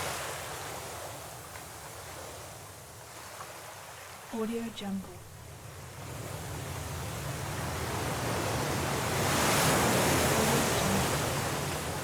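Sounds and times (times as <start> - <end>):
stormy sea waves breaking: 5.4 - 12.0.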